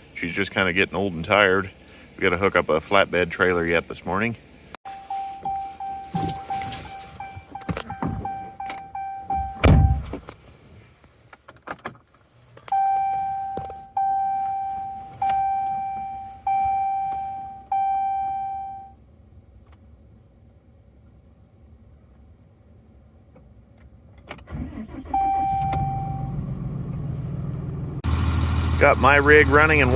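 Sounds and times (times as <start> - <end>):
truck warning chime dinging: 4.9 - 10.0, 12.7 - 19.0, 24.8 - 26.6
heavy thump: 9.4 - 10.2.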